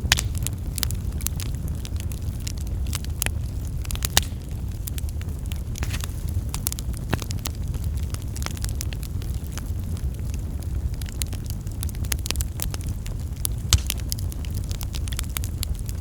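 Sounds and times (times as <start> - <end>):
wood fire crackling: 0.0 - 16.0
sharp pops: 5.8 - 7.3.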